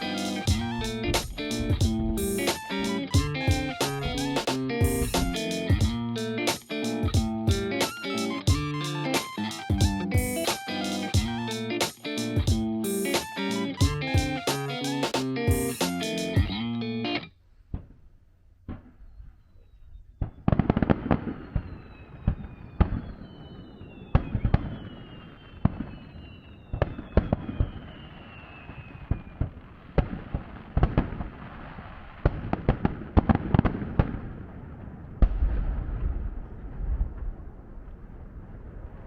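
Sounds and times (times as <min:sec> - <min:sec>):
fireworks whistling: 0:00.0 - 0:16.4, 0:18.8 - 0:30.2
fireworks bangs and crackles: 0:20.2 - 0:39.0.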